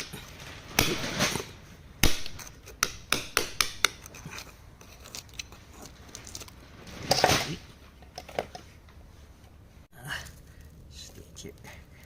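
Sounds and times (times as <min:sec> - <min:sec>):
hammer striking chisel on rock: 0:02.0 - 0:04.1.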